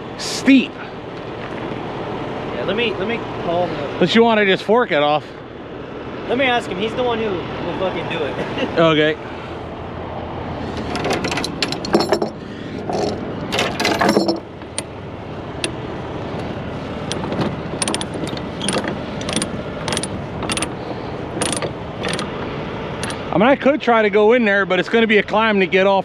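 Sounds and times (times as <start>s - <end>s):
steady background rumble: 0.0s - 26.0s
metallic clicking: 17.0s - 20.8s, 21.4s - 23.2s.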